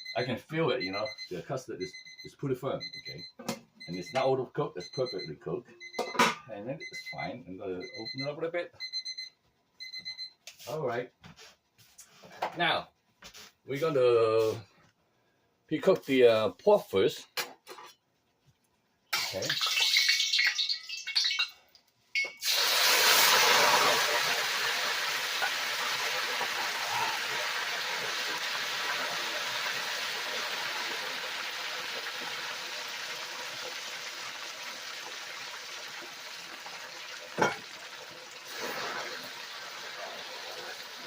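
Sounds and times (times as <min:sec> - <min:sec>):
meat sizzling in hot oil: 0:19.2 - 0:21.4, 0:22.4 - 0:41.0.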